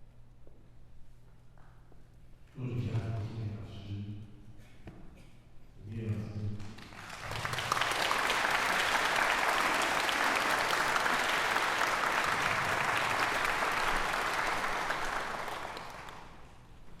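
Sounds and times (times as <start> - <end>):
audience applauding: 6.6 - 16.7.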